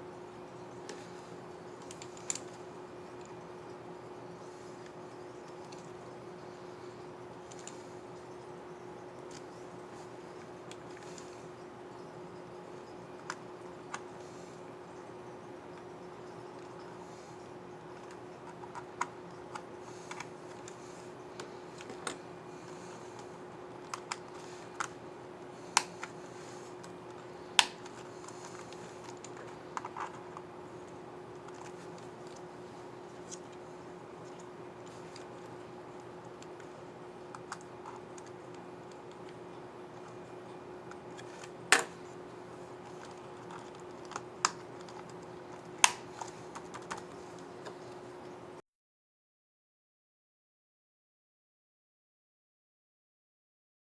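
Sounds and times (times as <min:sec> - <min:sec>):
faint steady hum: 0:00.0 - 0:48.6
sharp plastic snaps: 0:27.6 - 0:30.2, 0:42.9 - 0:47.1.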